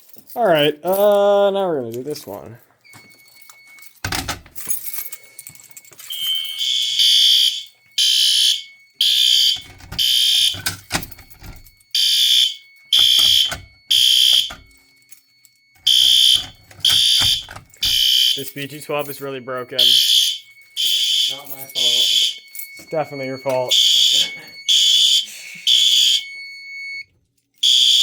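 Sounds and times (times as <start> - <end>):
fire alarm horn blasts: 6.0 - 28.0.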